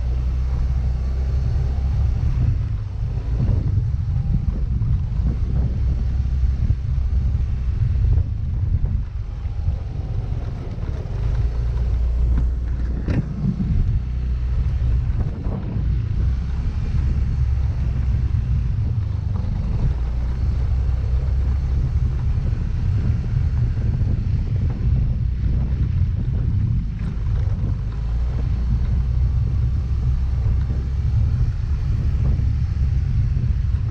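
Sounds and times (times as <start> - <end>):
scooter engine rumble: 0.0 - 33.9
wind buffeting microphone: 0.0 - 33.9.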